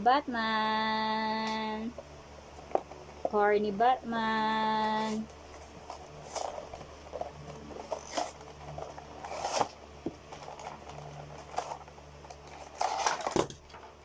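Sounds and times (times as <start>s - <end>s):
packaging rustling and tearing: 5.0s - 13.9s.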